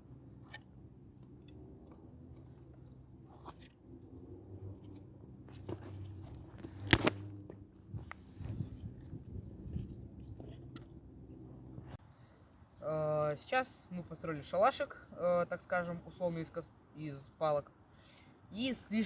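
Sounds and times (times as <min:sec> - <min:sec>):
dry sticks clicking and crunching: 0:05.0 - 0:08.3
stick snapping: 0:06.6 - 0:07.3.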